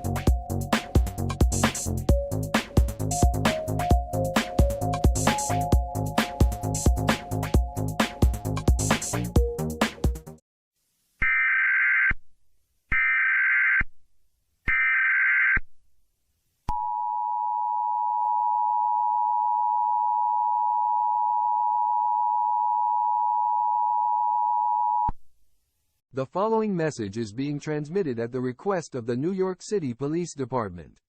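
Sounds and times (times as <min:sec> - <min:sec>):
electronic music: 0:00.0 - 0:10.4.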